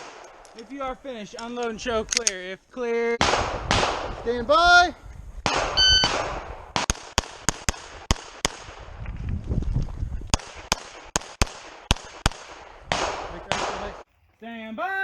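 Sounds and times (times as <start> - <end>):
pistol shots: 5.5 - 8.8, 10.3 - 14.0.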